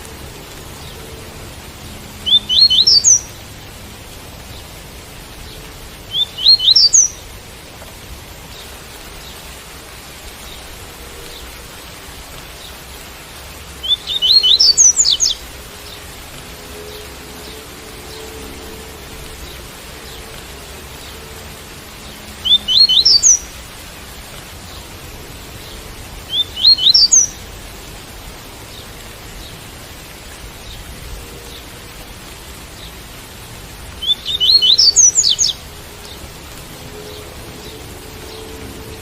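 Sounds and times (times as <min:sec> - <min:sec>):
rain hissing: 0:00.0 - 0:39.0
bird singing high upward notes: 0:02.2 - 0:03.3, 0:06.1 - 0:07.2, 0:13.8 - 0:15.4, 0:22.4 - 0:23.5, 0:26.3 - 0:27.4, 0:34.0 - 0:35.6.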